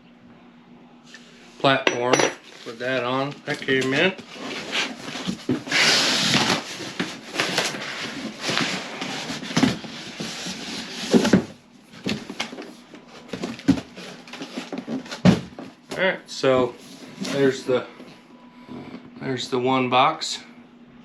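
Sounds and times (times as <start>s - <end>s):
packaging rustling: 3.5s - 15.7s.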